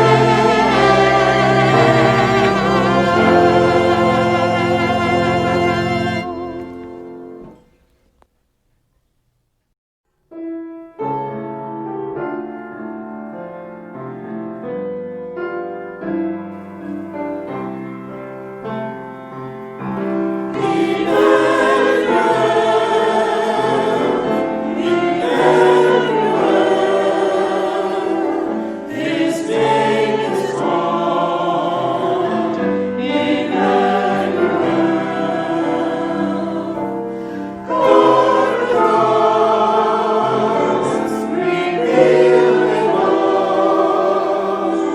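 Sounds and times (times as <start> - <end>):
choir singing: 0.0 - 7.6, 19.8 - 44.9
piano: 0.0 - 8.3, 10.1 - 44.9.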